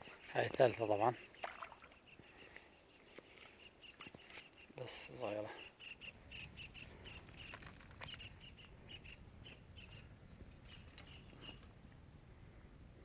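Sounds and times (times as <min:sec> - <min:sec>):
small bird chirping: 0:00.0 - 0:12.3.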